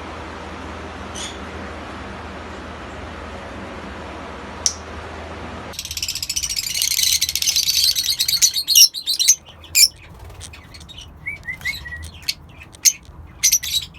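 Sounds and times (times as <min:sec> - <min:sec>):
parrot chicks rasping chatter: 0:05.8 - 0:13.9
parrot chicks squawking: 0:05.8 - 0:13.9.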